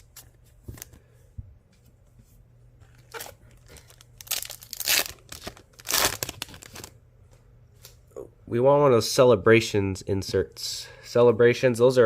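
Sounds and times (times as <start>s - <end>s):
foil wrapper crinkling and tearing: 3.1s - 7.0s.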